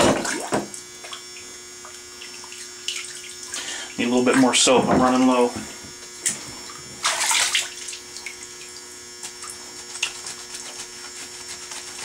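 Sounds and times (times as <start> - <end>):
bathtub water splash: 0.0 - 1.2, 2.2 - 5.5, 6.7 - 8.8
electrical hum: 0.0 - 12.0.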